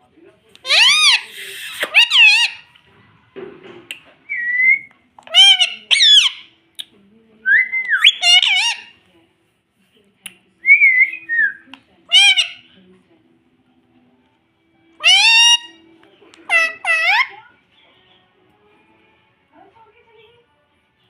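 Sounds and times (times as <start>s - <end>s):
parrot whistled calls: 0.6s - 2.6s, 4.3s - 6.5s, 7.5s - 8.9s, 10.7s - 12.6s, 15.0s - 15.8s, 16.5s - 17.3s.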